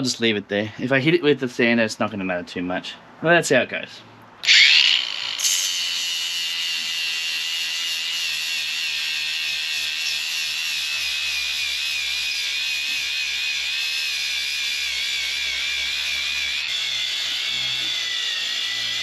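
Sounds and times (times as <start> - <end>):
power sander whining: 4.4 - 19.0
sanding hiss: 5.4 - 13.4.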